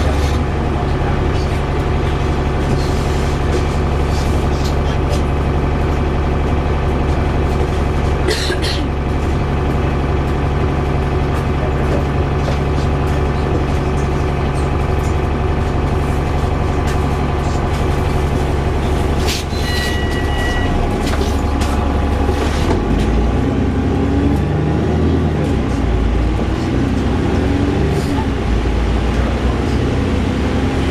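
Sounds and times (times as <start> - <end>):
bus engine drone: 0.0 - 30.9
short electronic beep: 19.5 - 20.8.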